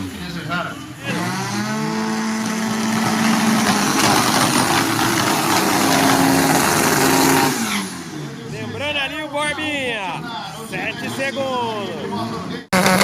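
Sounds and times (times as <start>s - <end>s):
broad rushing noise: 0.0s - 8.6s
race car engine revving: 0.0s - 9.5s, 10.1s - 13.0s.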